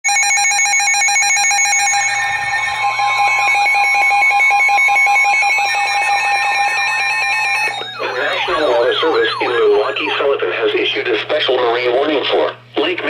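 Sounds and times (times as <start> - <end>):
pulsing electronic alarm tone: 0.1 - 10.9
warbling tones: 1.0 - 11.0.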